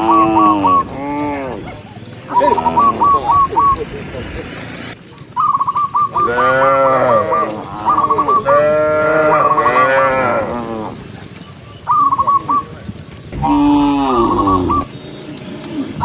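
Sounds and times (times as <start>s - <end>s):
cattle mooing: 0.0s - 3.5s, 6.2s - 11.0s, 13.4s - 14.9s.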